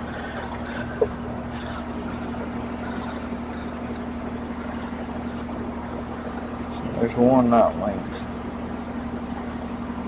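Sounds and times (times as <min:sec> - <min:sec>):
air conditioning hum: 0:00.0 - 0:10.0.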